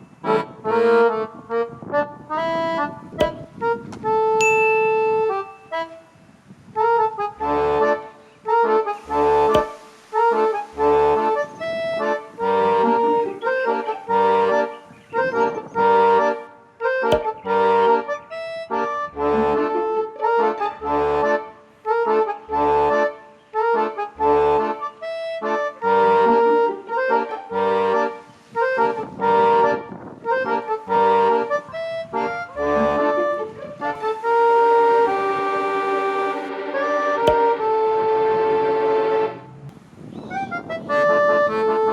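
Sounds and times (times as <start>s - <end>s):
accordion music: 0.0s - 39.7s, 40.3s - 41.9s
bass notes beat: 2.5s - 4.4s, 9.0s - 9.8s, 16.9s - 18.1s, 32.4s - 33.4s.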